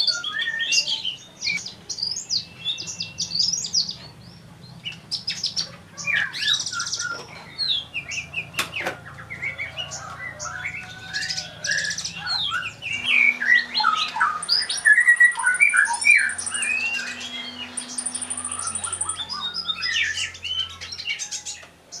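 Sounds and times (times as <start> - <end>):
sunbird singing: 0.0 - 22.0
faint low hum: 7.4 - 21.6.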